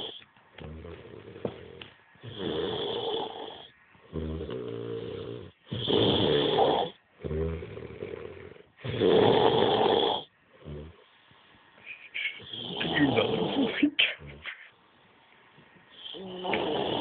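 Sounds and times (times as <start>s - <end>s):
man snoring: 0.0s - 11.0s, 12.4s - 13.8s, 16.0s - 17.0s.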